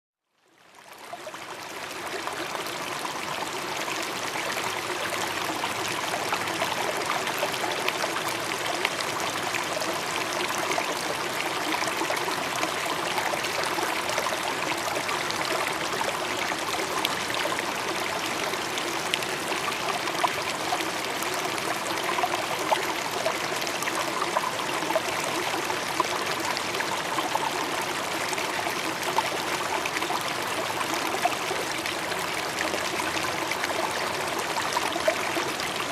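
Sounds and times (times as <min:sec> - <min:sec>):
waterfall rushing and splashing: 0:11.1 - 0:35.9.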